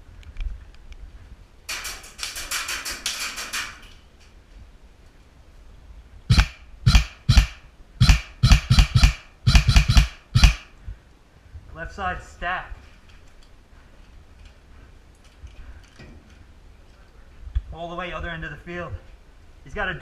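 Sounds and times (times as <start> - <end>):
airsoft gunfire: 6.3 - 10.7.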